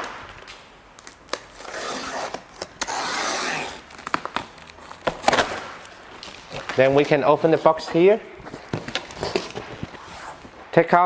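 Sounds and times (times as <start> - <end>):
cardboard packing tearing: 1.0 - 7.9.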